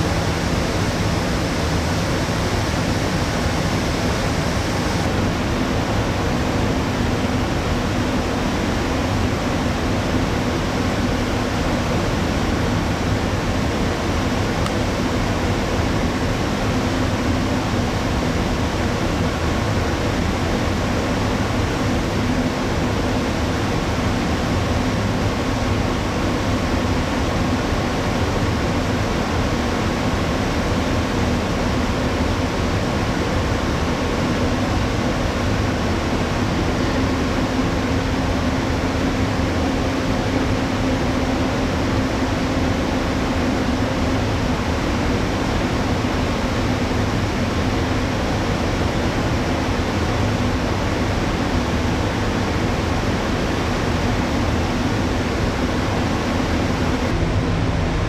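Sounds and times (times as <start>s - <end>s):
faint constant drone: 0.0s - 58.0s
ship ventilation hum: 0.0s - 58.0s.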